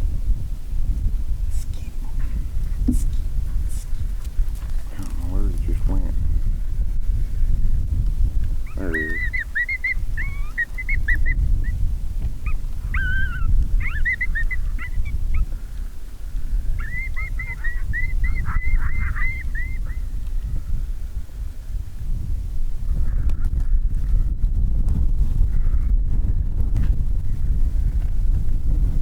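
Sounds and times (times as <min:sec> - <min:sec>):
wind rumble on microphone: 0:00.0 - 0:29.0
coyotes yipping: 0:08.6 - 0:11.8, 0:12.4 - 0:15.6, 0:16.6 - 0:20.2.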